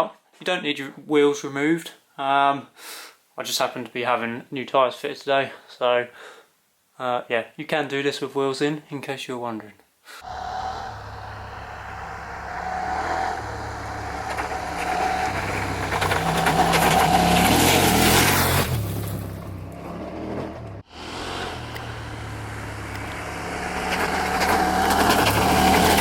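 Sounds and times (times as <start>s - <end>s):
motorcycle engine running: 10.2s - 19.9s, 20.6s - 26.0s.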